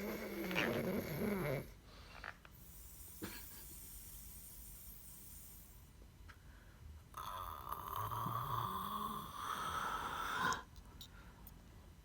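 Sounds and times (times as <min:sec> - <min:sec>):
person snoring: 0:00.0 - 0:01.7, 0:07.2 - 0:10.7.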